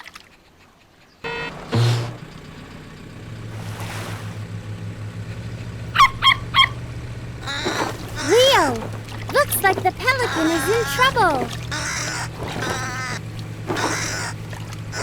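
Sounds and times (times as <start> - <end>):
cartoon honking calls: 6.0 - 6.8, 7.4 - 15.0.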